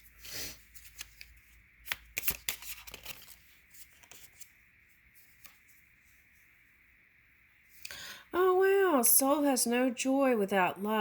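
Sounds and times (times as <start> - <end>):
cards being shuffled: 0.2 - 4.6.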